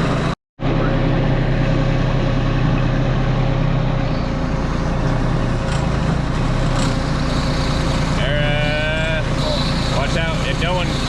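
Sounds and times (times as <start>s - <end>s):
diesel engine running steadily: 0.0s - 11.0s.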